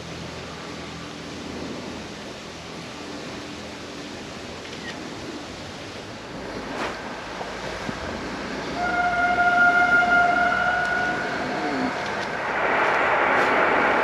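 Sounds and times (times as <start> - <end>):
motorcycle engine and rushing air: 11.9 - 14.0.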